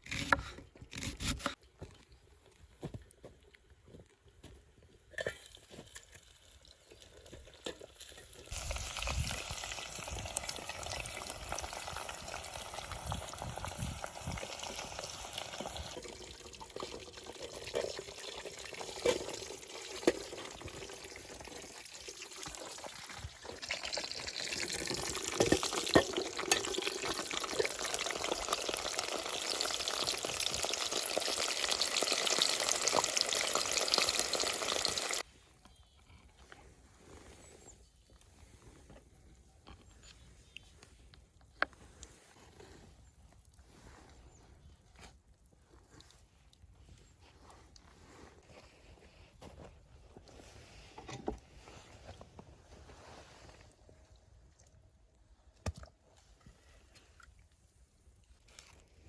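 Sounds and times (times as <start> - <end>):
food sizzling: 8.0 - 35.2.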